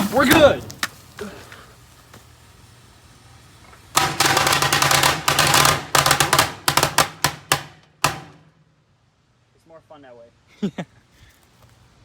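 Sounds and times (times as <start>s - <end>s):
firecrackers banging in microwave: 0.0s - 2.3s, 3.6s - 8.7s.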